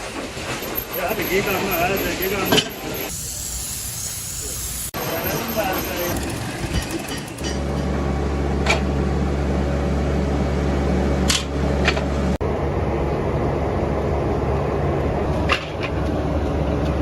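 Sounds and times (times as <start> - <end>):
machinery humming: 4.4 - 17.0.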